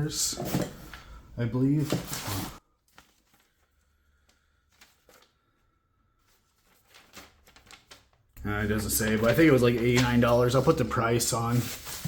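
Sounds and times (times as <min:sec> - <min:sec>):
faint clicks and packaging rustles: 0:01.8 - 0:12.0
handling rustle: 0:08.9 - 0:12.0.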